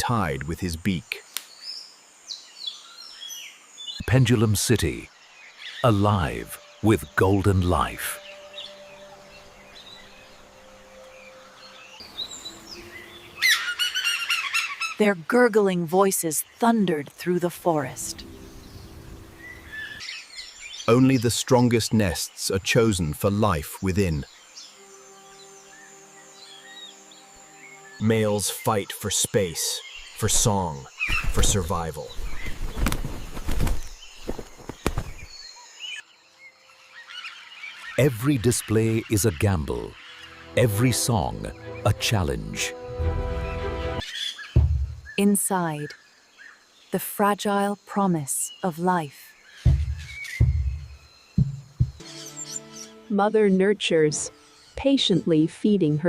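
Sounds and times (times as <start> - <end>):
loud sweeping bird calls: 0.7 - 15.2, 18.0 - 22.6, 23.6 - 47.0, 48.5 - 53.1
short high bird calls: 8.0 - 15.0
faint bird chirps: 16.0 - 42.1, 43.4 - 56.0
birds scuffling: 31.0 - 35.4
wing flutters and knocks: 31.0 - 35.4.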